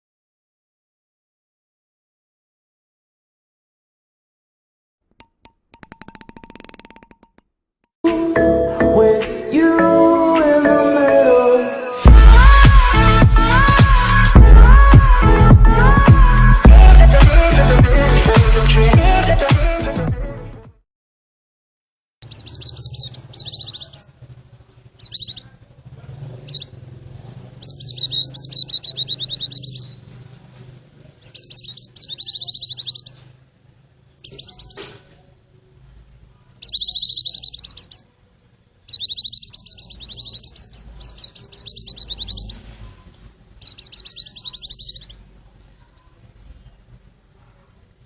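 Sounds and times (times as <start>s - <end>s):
bird twittering trills: 22.2s - 24.1s, 25.0s - 25.6s, 26.4s - 26.8s, 27.6s - 30.0s, 31.2s - 33.2s, 34.2s - 35.0s, 36.6s - 38.1s, 38.8s - 45.2s.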